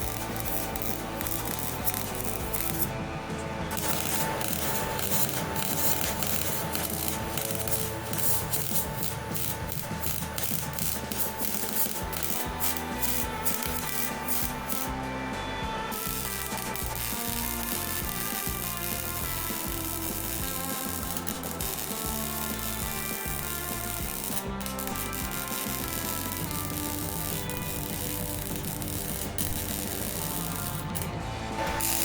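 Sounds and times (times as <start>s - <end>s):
metal rasping and scraping: 0.0s - 15.0s, 15.9s - 32.0s
background music: 0.0s - 32.0s.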